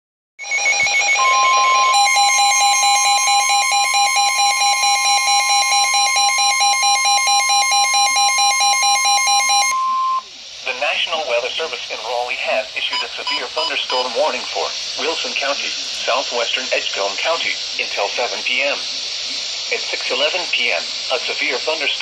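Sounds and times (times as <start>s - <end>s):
pulsing electronic alert beep: 0.4s - 10.2s
steady high-pitched alarm tone: 0.4s - 22.0s
burst of hissy noise: 10.2s - 22.0s.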